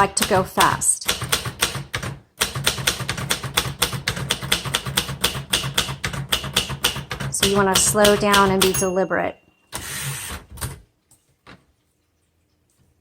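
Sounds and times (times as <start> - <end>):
typewriter keys clacking: 0.0 - 8.9.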